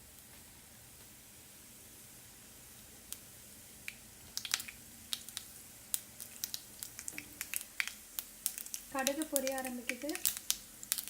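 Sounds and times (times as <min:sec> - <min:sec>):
oil sizzling: 0:02.7 - 0:11.0
seeds popping in oil: 0:03.0 - 0:11.0.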